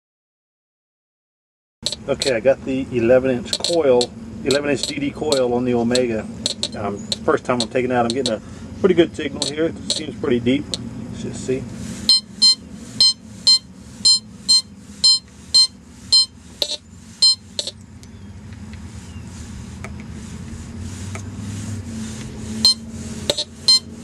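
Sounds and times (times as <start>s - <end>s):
metal detector beeping: 1.8s - 2.4s, 3.4s - 8.4s, 9.3s - 10.8s, 12.1s - 17.8s, 22.6s - 24.0s.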